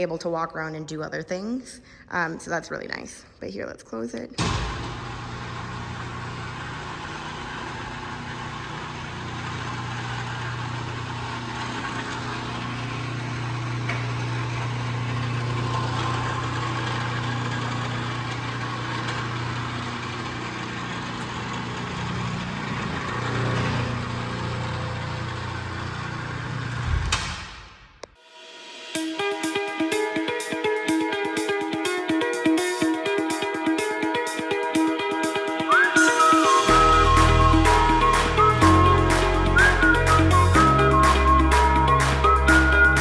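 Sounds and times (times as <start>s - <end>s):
electric motor humming: 4.6s - 27.1s, 35.7s - 43.0s.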